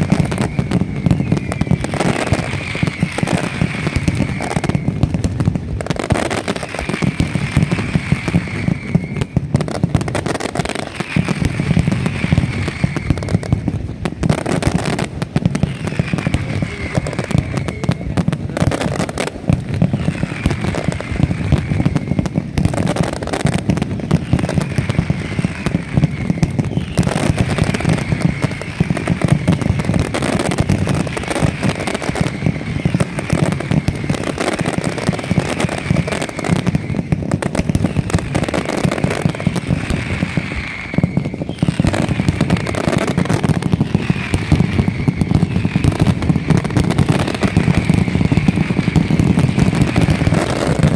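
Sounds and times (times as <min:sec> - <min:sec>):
firecracker bangs and crackle: 0:00.0 - 0:50.9
whistle falling in pitch: 0:08.2 - 0:09.5, 0:12.2 - 0:13.8, 0:15.6 - 0:18.3, 0:26.0 - 0:28.8, 0:40.2 - 0:43.2.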